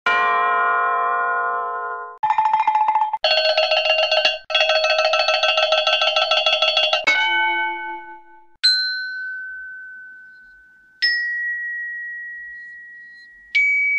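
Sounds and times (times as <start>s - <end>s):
bell rung rapidly: 2.2s - 8.0s.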